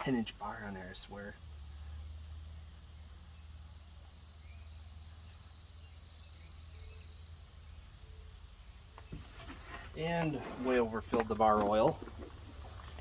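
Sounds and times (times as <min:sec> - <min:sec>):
low steady hum: 0:00.0 - 0:13.0
insects trilling: 0:00.1 - 0:07.6.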